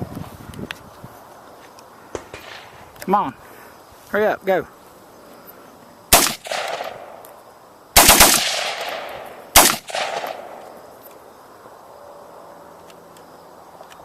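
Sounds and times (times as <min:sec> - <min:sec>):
rifle gunshots with echo: 0:06.1 - 0:07.2, 0:08.0 - 0:10.6.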